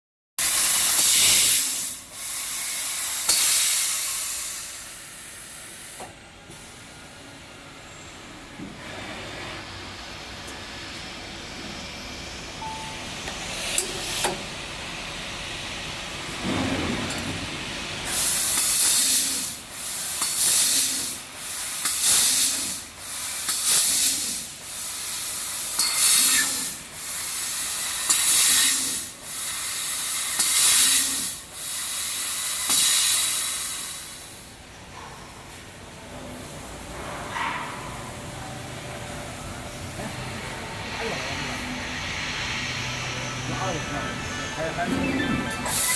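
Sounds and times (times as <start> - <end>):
laser cutter hissing bursts: 0.4 - 6.0, 18.1 - 34.6, 40.1 - 45.9.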